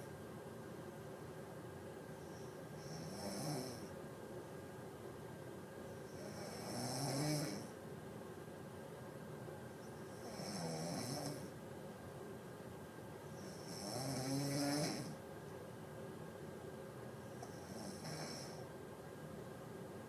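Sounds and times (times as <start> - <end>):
person snoring: 2.8 - 3.9, 6.1 - 7.7, 10.2 - 11.5, 13.5 - 15.2, 17.5 - 18.6.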